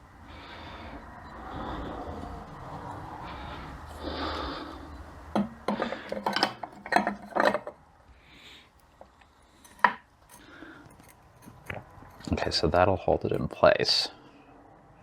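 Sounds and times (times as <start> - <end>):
metal parts clinking: 5.7 - 7.8, 9.6 - 12.5.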